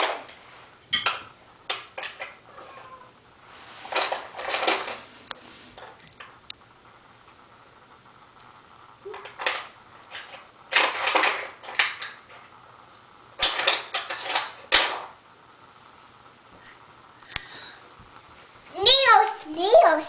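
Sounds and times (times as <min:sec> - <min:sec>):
hard objects rattling: 0:13.4 - 0:15.1.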